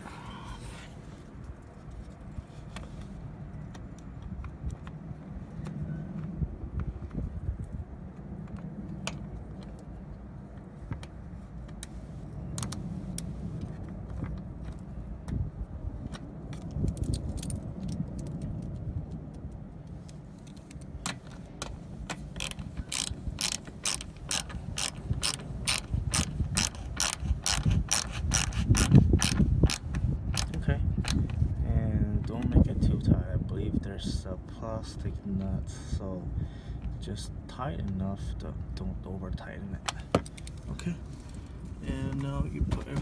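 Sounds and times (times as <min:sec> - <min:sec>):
ratchet wrench clicking: 0:22.4 - 0:31.2.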